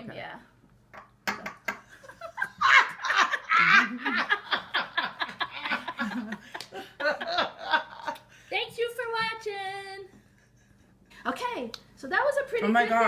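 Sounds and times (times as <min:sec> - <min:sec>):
hearty laughing in bursts: 0:02.0 - 0:08.5.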